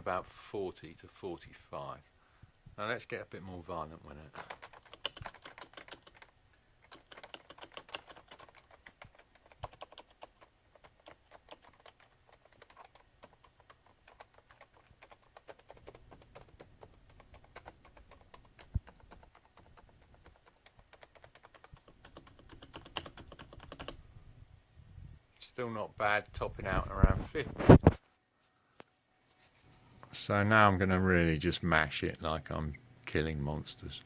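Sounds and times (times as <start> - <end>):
fast keyboard typing: 4.2 - 24.0.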